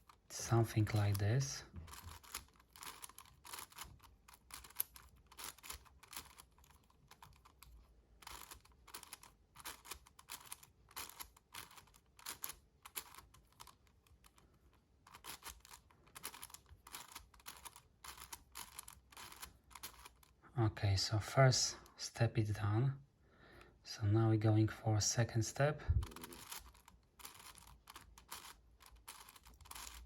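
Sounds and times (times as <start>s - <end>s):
puzzle cube clicking: 1.9s - 14.4s, 15.0s - 20.4s, 26.0s - 30.0s.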